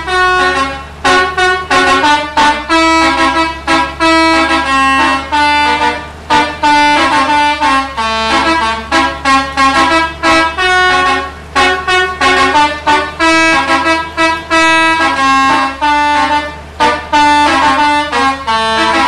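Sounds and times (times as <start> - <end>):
tuned air horns playing melody: 0.0 - 19.0.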